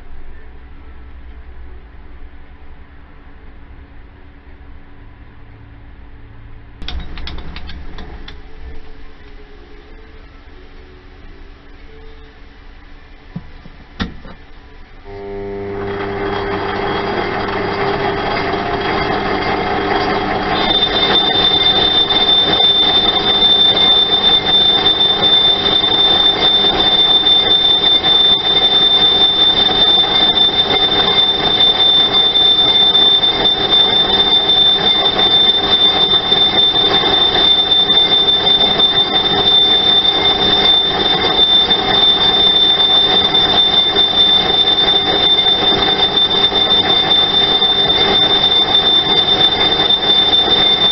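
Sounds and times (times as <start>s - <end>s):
high-pitched cutting squeal: 15.7s - 50.9s
machine tool cutting metal: 15.9s - 50.9s.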